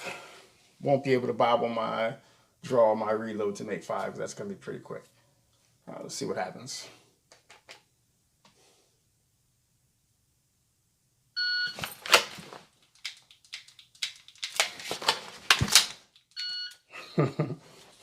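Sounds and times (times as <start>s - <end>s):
shot timer beep: 11.4s - 11.8s
magazine reload clatter: 11.8s - 16.4s.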